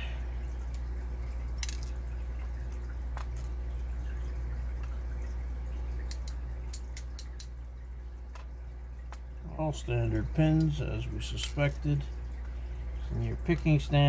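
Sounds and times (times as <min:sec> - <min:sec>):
steady low hum: 0:00.0 - 0:14.0
metallic clicks of tools: 0:06.1 - 0:07.5.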